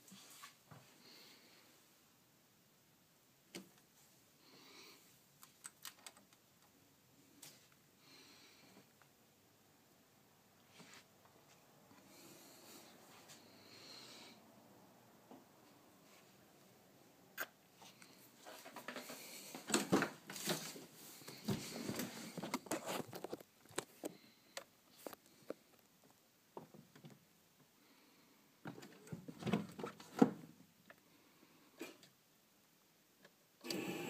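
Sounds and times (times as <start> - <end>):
rustling: 17.7 - 25.8.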